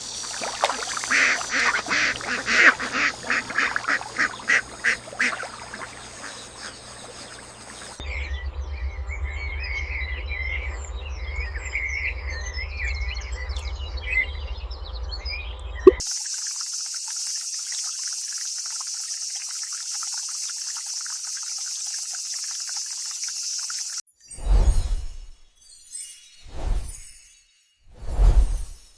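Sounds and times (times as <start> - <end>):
running water hiss: 0.0 - 8.0, 15.9 - 24.6
rhythmic quacking calls: 0.8 - 7.9
low rumble: 8.0 - 15.9.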